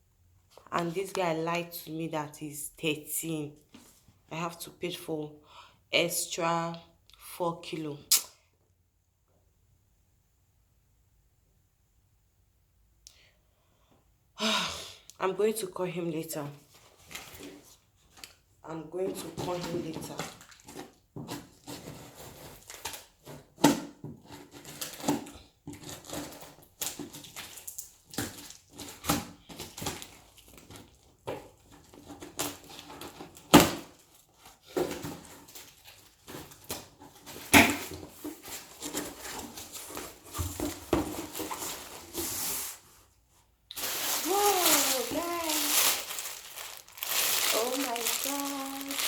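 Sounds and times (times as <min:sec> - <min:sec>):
clothes box knocks and rustling: 0:36.3 - 0:42.2.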